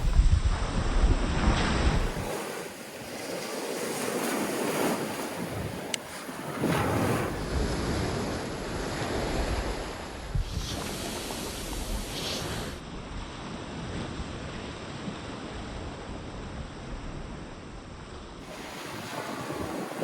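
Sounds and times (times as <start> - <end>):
surf washing onto beach: 0.0 - 12.8, 18.4 - 20.0
wind rumbling on microphone: 0.0 - 20.0.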